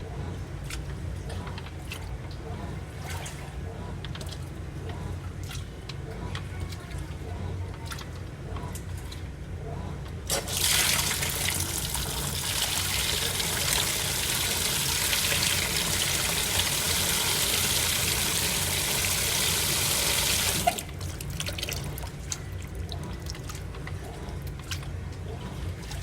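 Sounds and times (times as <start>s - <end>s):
washing machine hum: 0.0s - 26.0s
water rushing into washing machine: 10.2s - 26.0s.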